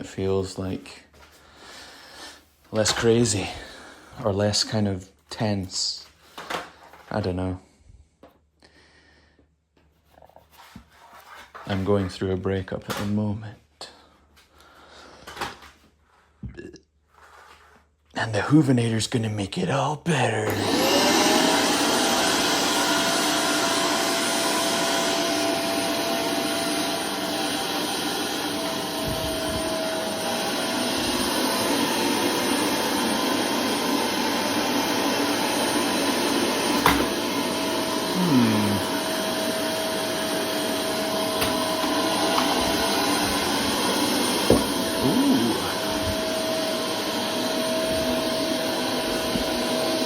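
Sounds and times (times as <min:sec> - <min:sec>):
vacuum cleaner motor whine: 0:20.4 - 0:50.0.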